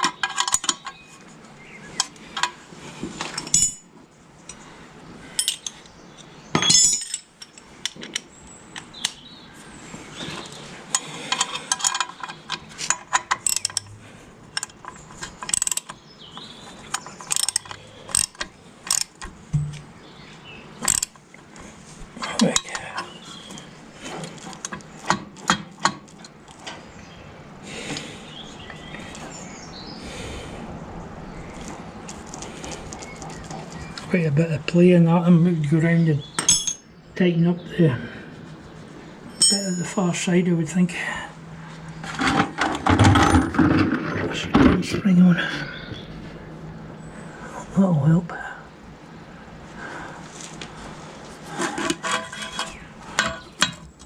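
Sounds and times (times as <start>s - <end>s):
hand tools clicking and scraping: 0.0s - 1.4s, 2.0s - 3.9s, 5.4s - 9.2s, 10.2s - 19.9s, 20.8s - 26.8s, 39.3s - 40.0s, 42.0s - 44.3s, 50.3s - 54.0s
sharp metal clanks: 6.6s - 7.6s, 12.8s - 14.0s, 17.0s - 19.9s, 36.4s - 36.9s, 39.3s - 40.0s.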